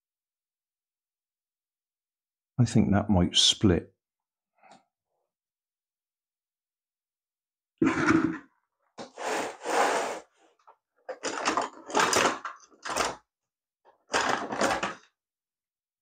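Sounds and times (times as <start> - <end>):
plastic scraping and grinding: 9.0 - 13.3, 13.9 - 15.2.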